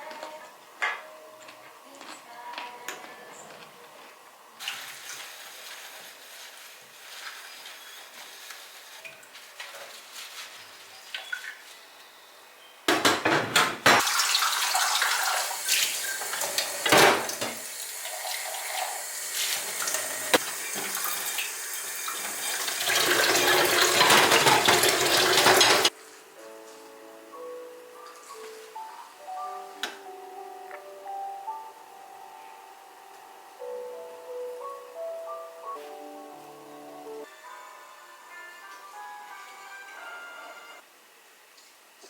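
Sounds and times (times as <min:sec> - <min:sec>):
tap water running into sink: 0:14.0 - 0:25.9.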